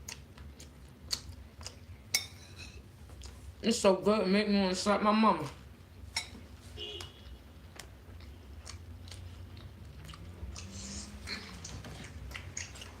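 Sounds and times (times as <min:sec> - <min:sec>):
person chewing food: 0:00.0 - 0:03.5, 0:06.2 - 0:13.0
low steady hum: 0:00.0 - 0:13.0
mouth clicks and smacks: 0:10.1 - 0:13.0.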